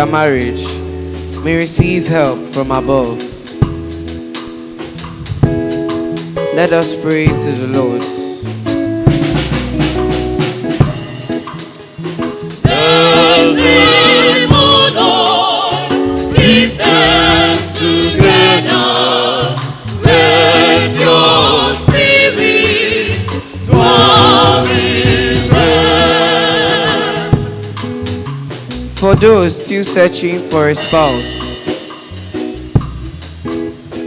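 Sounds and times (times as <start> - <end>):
band accompaniment: 0.0 - 34.0
church choir singing: 12.6 - 27.8.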